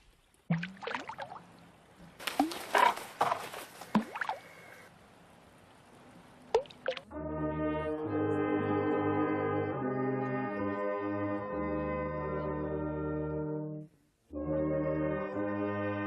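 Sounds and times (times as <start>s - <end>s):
water splashes and drips: 0.0s - 7.1s
brass music with long held notes: 7.1s - 16.0s.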